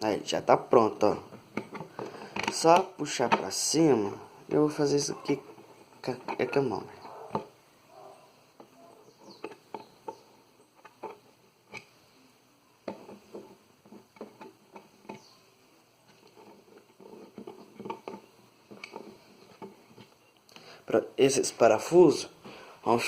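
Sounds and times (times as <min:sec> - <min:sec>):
small screws and plastic parts handled: 0:08.6 - 0:11.9, 0:12.8 - 0:15.4, 0:16.0 - 0:20.3.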